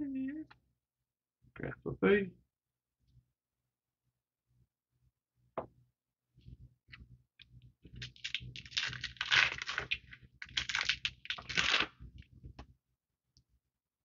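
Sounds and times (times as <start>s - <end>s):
foil wrapper crinkling and tearing: 8.0s - 12.0s.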